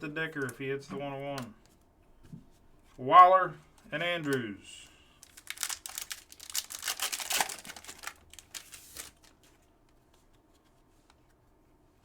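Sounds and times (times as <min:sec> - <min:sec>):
foil wrapper crinkling and tearing: 0:05.2 - 0:09.5.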